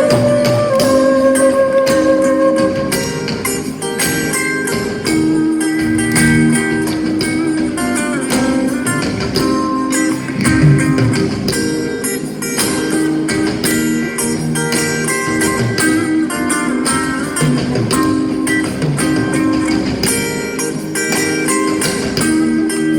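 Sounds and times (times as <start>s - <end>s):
guitar: 0.0s - 22.9s.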